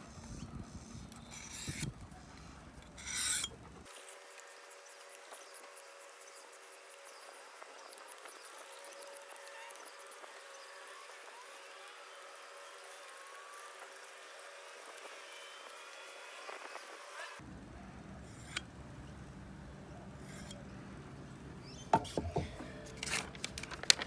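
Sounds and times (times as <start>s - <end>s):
knife blade rasping on sharpener: 1.2s - 1.9s, 2.9s - 7.2s, 18.3s - 18.7s, 20.2s - 20.6s.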